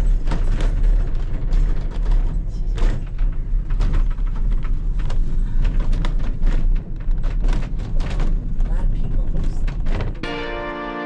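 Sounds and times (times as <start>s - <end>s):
wind buffeting microphone: 0.0s - 10.2s
train car rattling over track: 0.0s - 10.4s.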